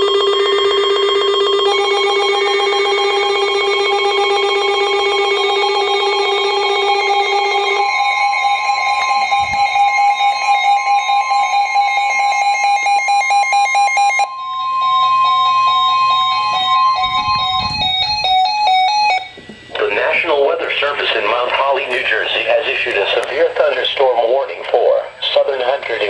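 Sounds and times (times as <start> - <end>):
lower stepping tone: 0.0 - 12.3, 14.2 - 19.8
two-pitch electronic alarm tone: 0.0 - 26.0.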